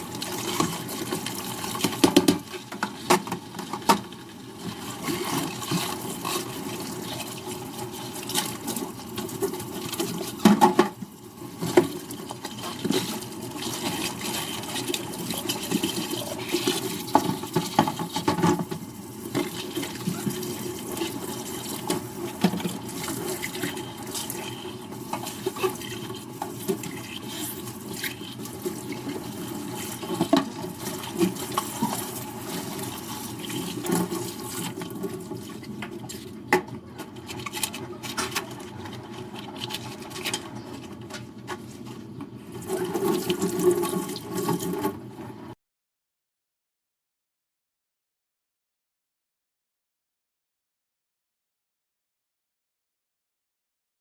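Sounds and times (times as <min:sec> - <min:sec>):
tap running into sink: 0:00.4 - 0:04.1.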